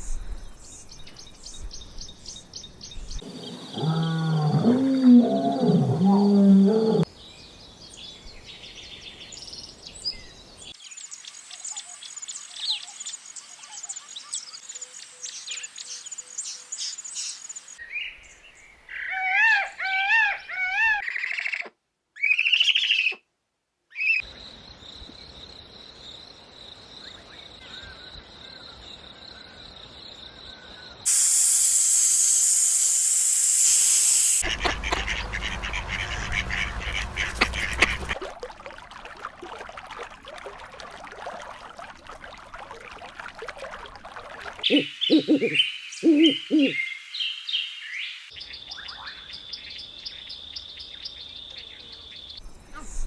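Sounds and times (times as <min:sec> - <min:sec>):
loud low-pitched animal call: 0:03.3 - 0:07.1
faint steady hiss: 0:31.1 - 0:38.1
warbling calls: 0:32.1 - 0:38.2, 0:38.9 - 0:46.8.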